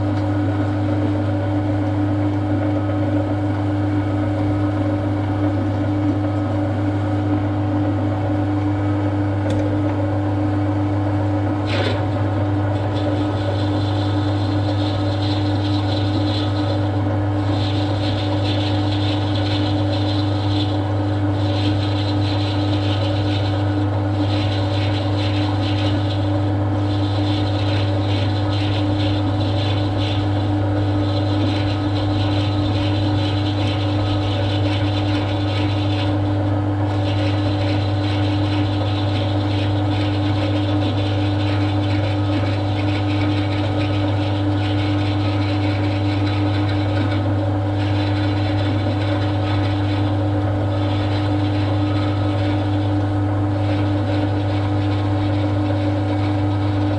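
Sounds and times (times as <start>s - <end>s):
workshop machine humming: 0.0s - 56.9s
gritty high-pitched grinding noise: 11.6s - 56.9s.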